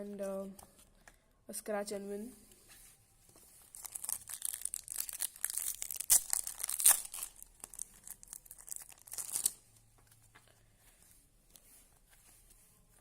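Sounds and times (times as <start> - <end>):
foil wrapper crinkling and tearing: 3.6 - 9.6.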